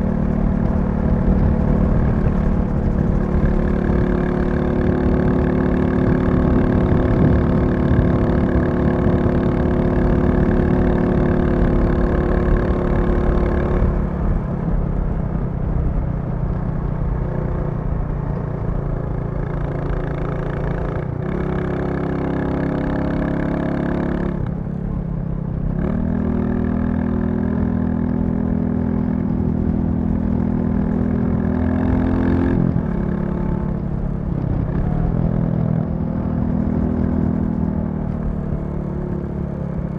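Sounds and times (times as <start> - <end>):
motorcycle engine riding: 0.0 - 39.9.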